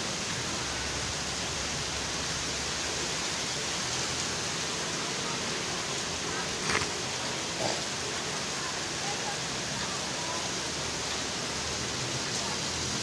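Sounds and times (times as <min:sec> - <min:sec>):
steady rain hiss: 0:00.0 - 0:13.0.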